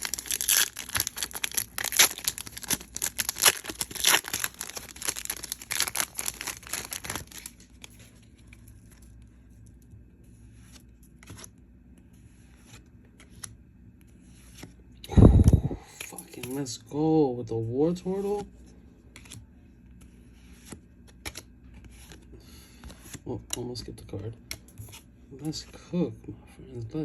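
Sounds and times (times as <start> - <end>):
foil wrapper tearing and crinkling: 0.0 - 7.7.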